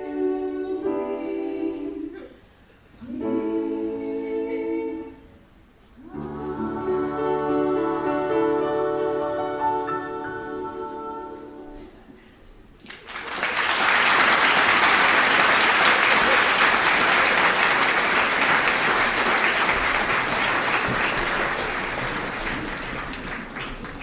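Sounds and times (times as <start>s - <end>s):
audience applauding: 12.8s - 24.0s.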